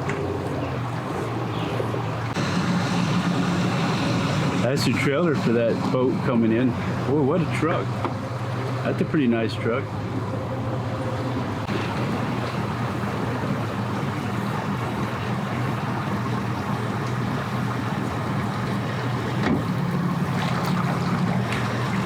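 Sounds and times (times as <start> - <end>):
engine idling: 0.2 - 7.1.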